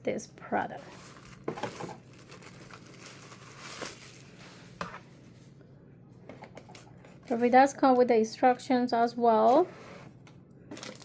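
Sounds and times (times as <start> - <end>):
packaging rustling and crinkling: 0.8 - 5.0, 10.7 - 11.0.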